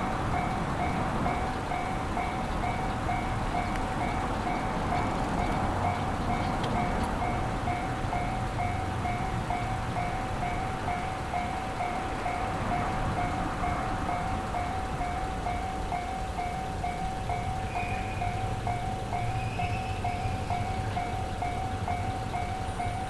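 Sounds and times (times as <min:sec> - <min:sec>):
level crossing warning bell: 0:00.0 - 0:23.0.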